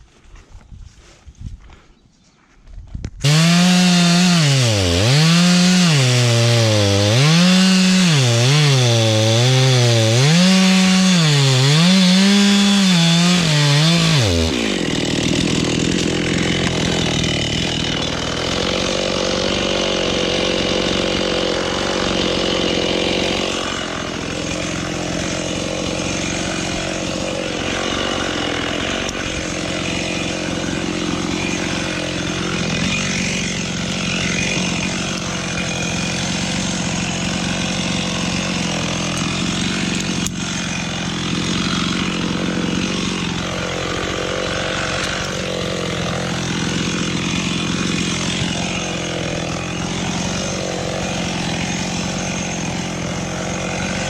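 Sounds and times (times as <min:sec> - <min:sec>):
chainsaw cutting wood: 0:03.2 - 0:54.0.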